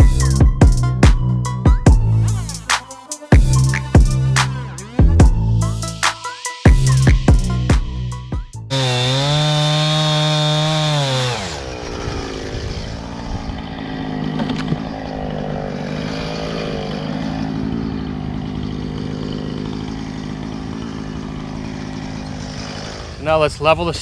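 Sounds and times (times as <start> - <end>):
chainsaw running: 8.6 - 23.4.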